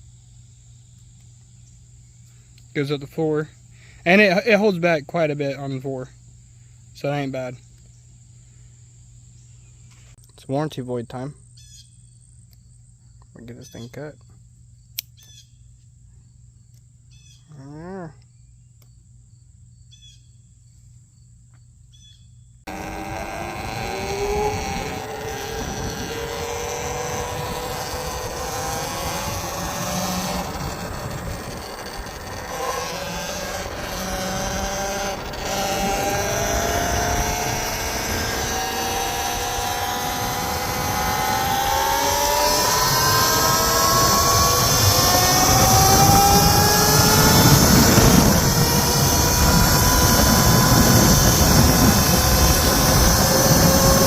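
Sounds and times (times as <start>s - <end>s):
electric motorbike motor whining: 22.7s - 54.0s
wind and tyre rush: 22.7s - 54.0s.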